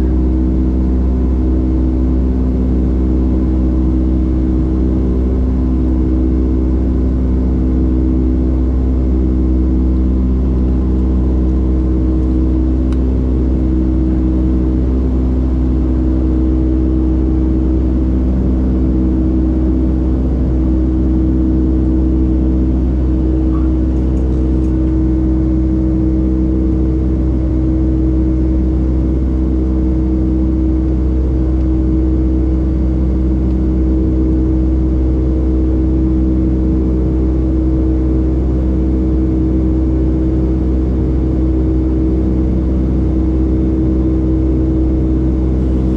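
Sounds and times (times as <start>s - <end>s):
humming engine tones: 0.0s - 45.9s
jet engines rumbling: 18.0s - 28.1s, 44.3s - 45.9s.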